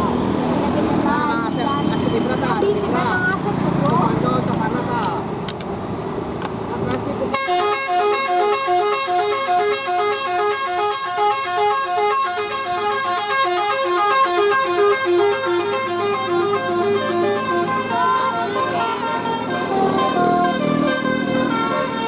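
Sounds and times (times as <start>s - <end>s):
multi-tone bus horn melody: 7.3s - 22.0s.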